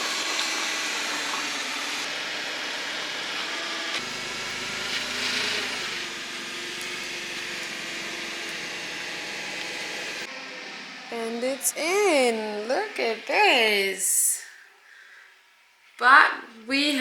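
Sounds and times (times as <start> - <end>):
deck scraping and whirring: 0.0 - 10.3.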